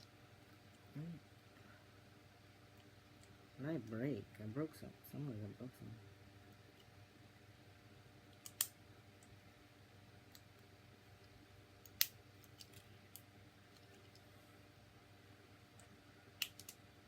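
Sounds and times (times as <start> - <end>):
plastic action figure clicking: 16.4 - 16.8.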